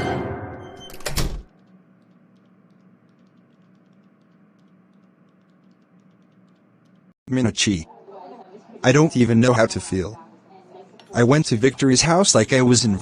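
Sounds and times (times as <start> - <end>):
soft clicks: 1.6 - 7.1.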